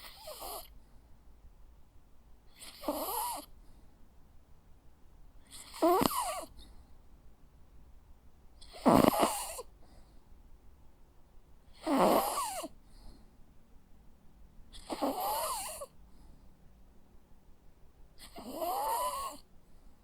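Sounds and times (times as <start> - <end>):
dog snoring: 0.0 - 0.7, 2.5 - 3.5, 5.5 - 6.5, 8.6 - 9.7, 11.8 - 12.7, 14.7 - 15.9, 18.2 - 19.4.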